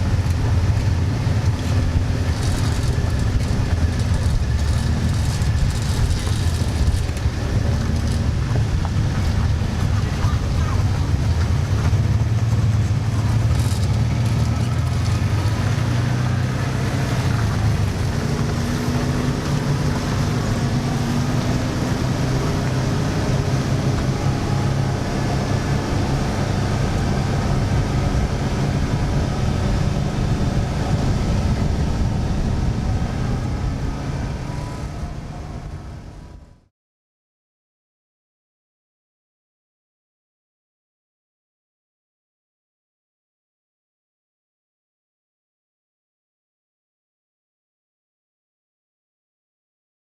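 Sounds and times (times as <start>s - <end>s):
atv engine droning: 0.0s - 36.7s.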